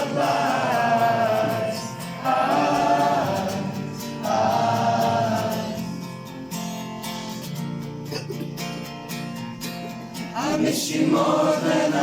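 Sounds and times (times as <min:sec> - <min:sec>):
crowd singing along: 0:00.0 - 0:06.3, 0:10.2 - 0:12.0
acoustic guitar: 0:00.0 - 0:12.0.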